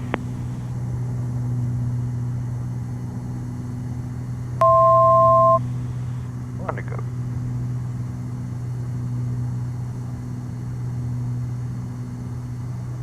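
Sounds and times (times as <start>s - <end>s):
aircraft engines droning: 0.0s - 13.0s
two-tone electronic beep: 4.6s - 5.6s.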